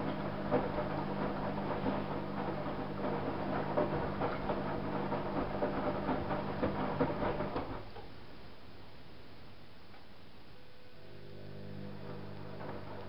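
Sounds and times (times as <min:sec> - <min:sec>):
laundry tumbling in drum: 0:00.0 - 0:07.9
washing machine motor hum: 0:00.0 - 0:08.0, 0:10.6 - 0:13.0.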